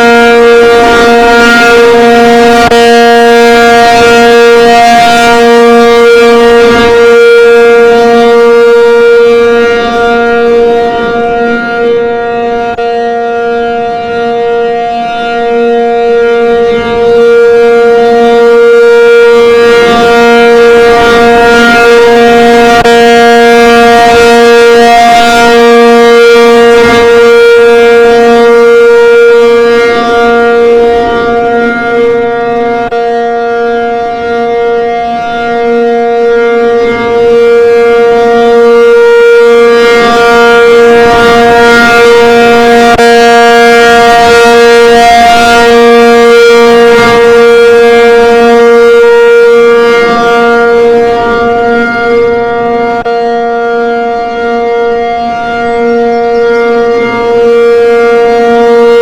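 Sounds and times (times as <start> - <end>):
warning siren steady tone: 0.0 - 59.0.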